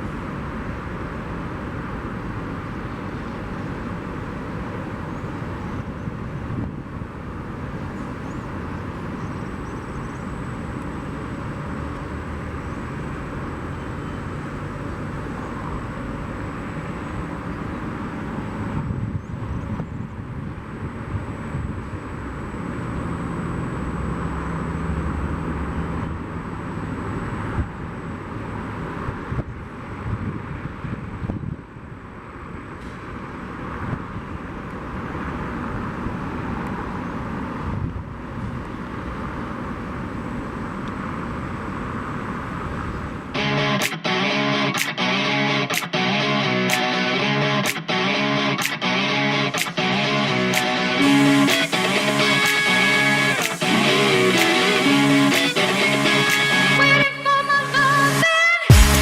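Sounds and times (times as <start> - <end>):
high engine whine: 43.3 - 59.0.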